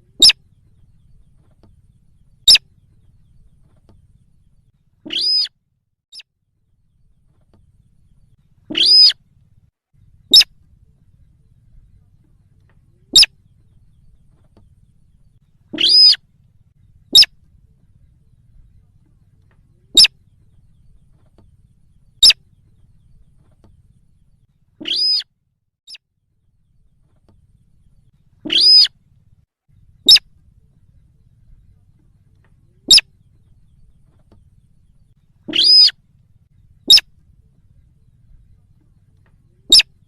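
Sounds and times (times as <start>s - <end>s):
high bird calls: 0.0s - 5.5s, 7.7s - 9.2s, 10.1s - 12.0s, 13.0s - 16.2s, 17.0s - 17.4s, 19.7s - 23.9s, 24.8s - 25.2s, 26.8s - 29.0s, 29.8s - 31.7s, 32.6s - 36.0s, 36.6s - 40.0s.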